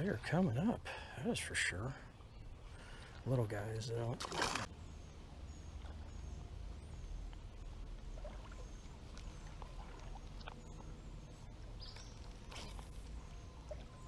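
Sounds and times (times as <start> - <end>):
steady low rumble: 4.6 - 14.0.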